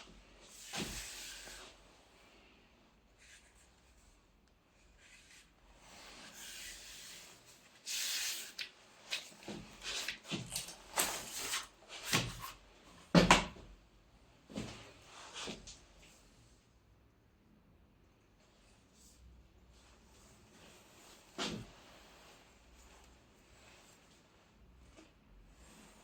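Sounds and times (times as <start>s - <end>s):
rubbing and scraping handling noises: 3.0s - 13.1s.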